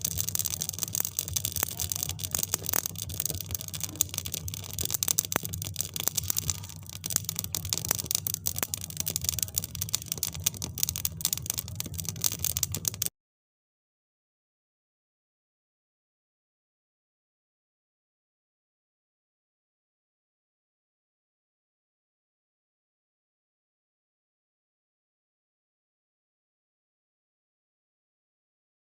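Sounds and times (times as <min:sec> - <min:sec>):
fire crackling and popping: 0:00.0 - 0:13.1.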